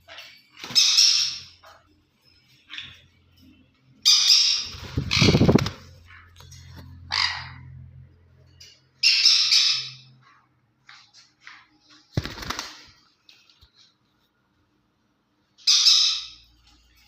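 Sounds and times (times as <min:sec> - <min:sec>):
parakeet squawking: 0:04.0 - 0:05.8, 0:07.0 - 0:07.8.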